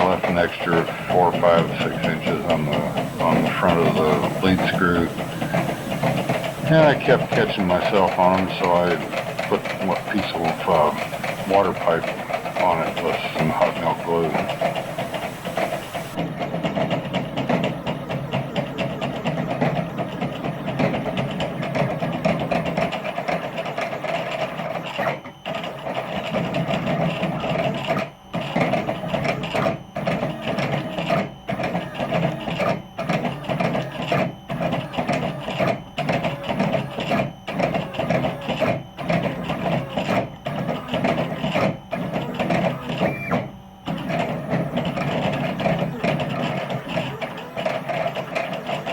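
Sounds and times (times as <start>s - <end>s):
stepper motors whining: 0.0s - 16.2s.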